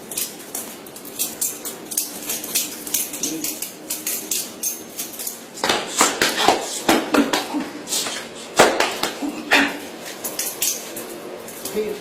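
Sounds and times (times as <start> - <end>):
butterfly knife handles clicking: 1.0 - 5.4.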